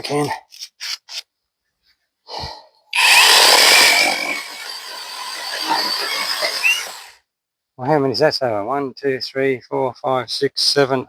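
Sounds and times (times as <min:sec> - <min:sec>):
electric chainsaw cutting log: 0:03.0 - 0:07.2.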